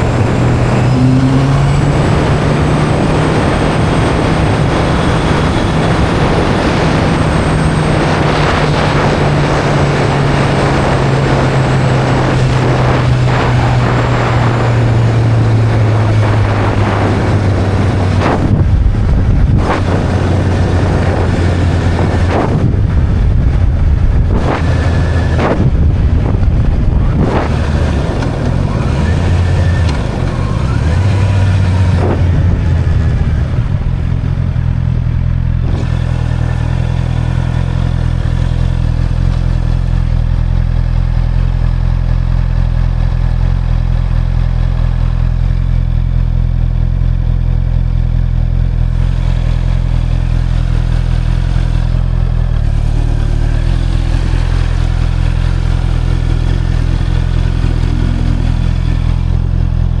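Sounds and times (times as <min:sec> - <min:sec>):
motorcycle engine idling: 0:22.8 - 1:00.0.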